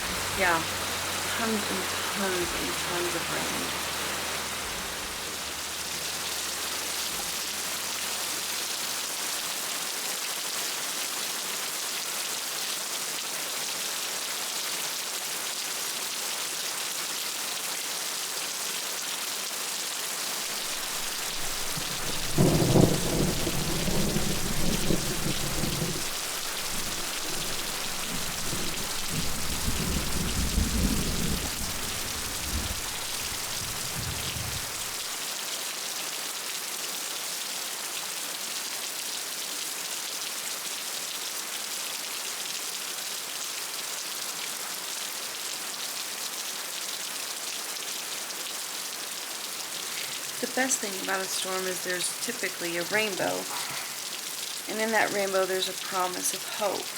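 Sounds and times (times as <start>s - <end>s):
deep uneven rumble: 0.0s - 8.6s, 20.5s - 35.2s
heavy rain: 0.0s - 56.9s.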